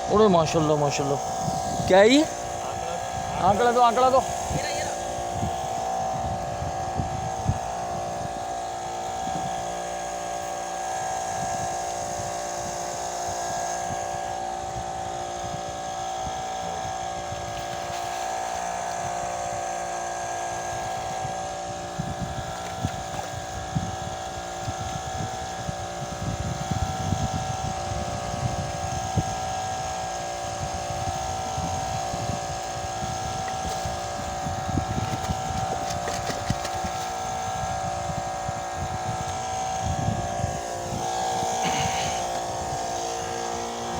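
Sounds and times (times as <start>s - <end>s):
motorboat engine droning: 0.0s - 43.9s
wind gusting on microphone: 0.0s - 43.9s.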